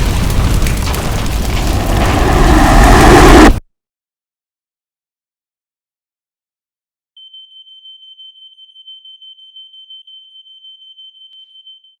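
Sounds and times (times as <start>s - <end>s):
smoke alarm tone: 7.2s - 12.0s.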